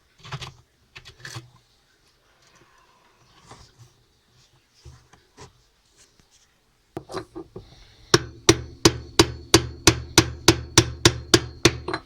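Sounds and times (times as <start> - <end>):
hammer striking chisel on metal: 7.0 - 12.0.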